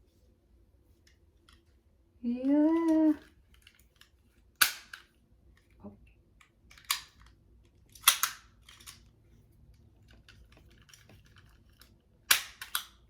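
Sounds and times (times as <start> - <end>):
plastic toy case clicks: 2.7 - 5.1, 6.7 - 9.0, 10.1 - 13.0.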